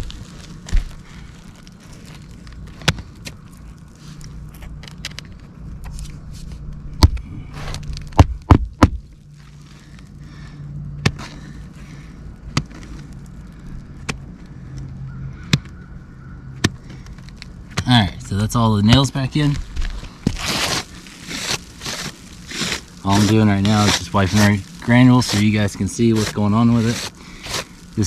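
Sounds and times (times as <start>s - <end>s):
nails being hammered into shingle: 8.2s - 9.0s.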